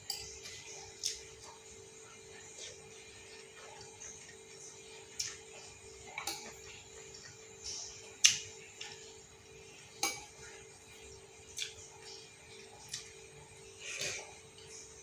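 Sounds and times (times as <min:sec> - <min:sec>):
cutlery clinking against bowl: 0:00.0 - 0:01.2, 0:10.0 - 0:10.4.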